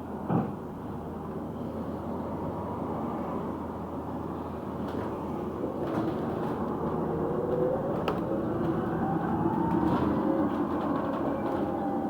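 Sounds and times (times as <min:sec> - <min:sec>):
bus body knocks and rattles: 0:00.2 - 0:00.6, 0:04.8 - 0:11.9
electric bus motor whining: 0:05.3 - 0:12.0.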